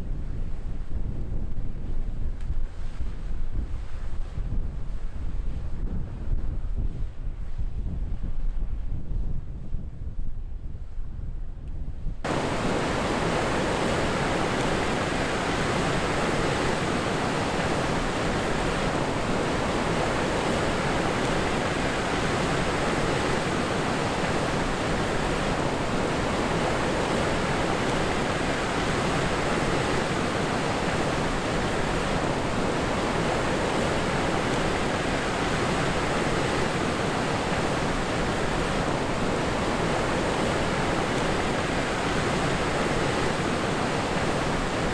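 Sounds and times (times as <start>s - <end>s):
wind rumble on microphone: 0.0s - 44.9s
waterfall rushing: 12.3s - 44.9s.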